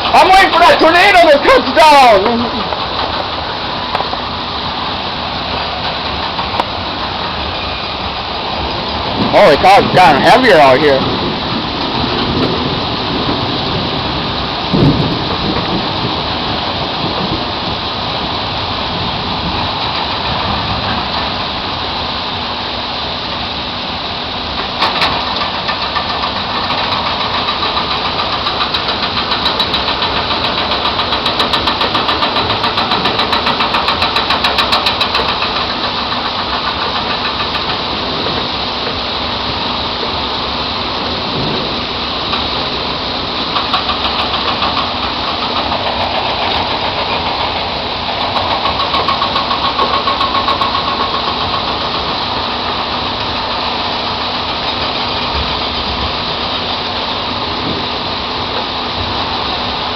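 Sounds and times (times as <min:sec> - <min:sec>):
heavy rain pouring: 0:00.0 - 0:59.9
rapid patter of ticks: 0:24.6 - 0:37.9, 0:43.4 - 0:53.5.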